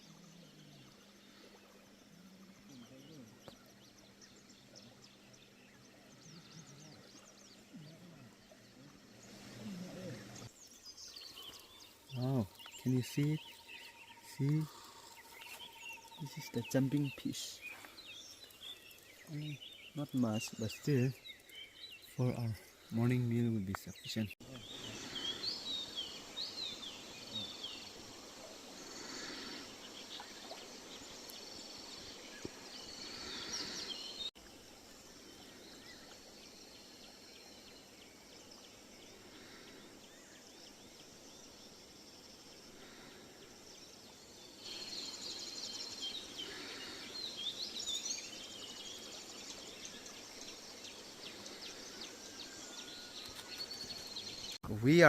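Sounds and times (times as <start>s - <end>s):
steady outdoor hiss: 0.0s - 55.0s
birds chirping and calling: 9.3s - 28.0s, 32.4s - 34.3s.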